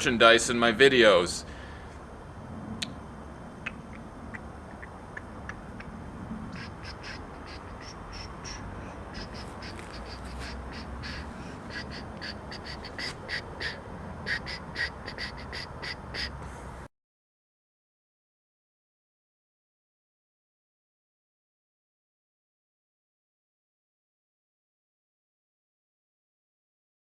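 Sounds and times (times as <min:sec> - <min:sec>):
steady low background noise: 0:00.0 - 0:16.9
crows cawing: 0:06.5 - 0:16.4.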